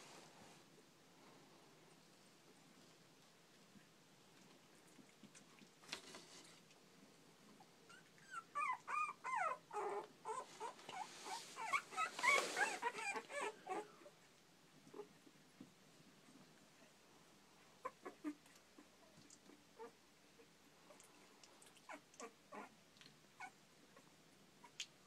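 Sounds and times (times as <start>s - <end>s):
rustling: 0.0s - 6.9s, 9.3s - 13.8s
puppies whimpering: 7.9s - 14.1s.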